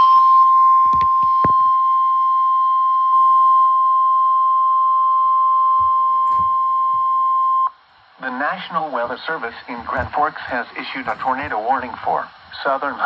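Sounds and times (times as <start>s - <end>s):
steady alarm tone: 0.0s - 7.8s.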